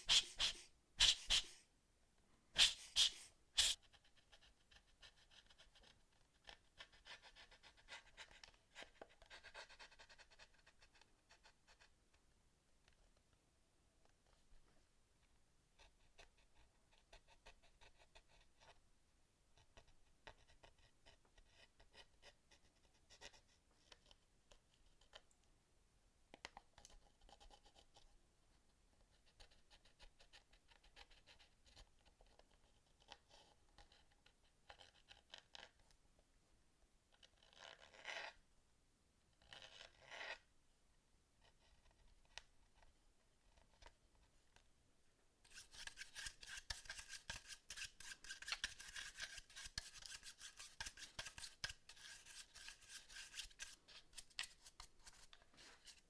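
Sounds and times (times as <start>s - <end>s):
loud rasping scrubs: 2.6s - 3.8s.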